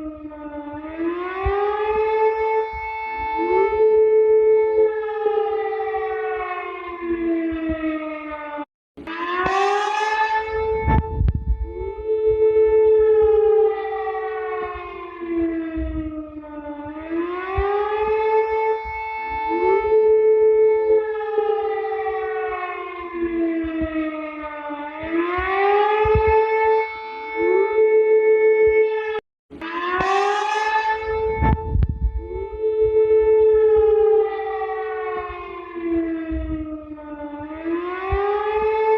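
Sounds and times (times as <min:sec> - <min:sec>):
siren slow wail: 0:00.0 - 0:38.9
steady low tone: 0:10.4 - 0:17.2, 0:31.0 - 0:34.3.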